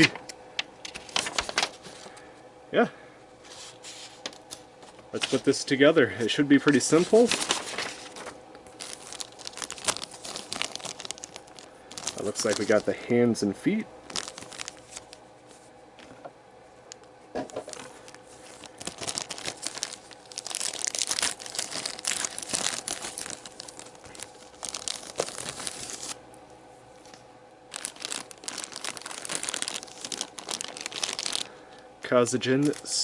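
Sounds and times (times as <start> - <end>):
plastic packaging crinkling and tearing: 0.0 - 2.1, 5.2 - 5.6, 6.6 - 13.1, 14.0 - 15.2, 17.4 - 26.2, 27.0 - 33.0.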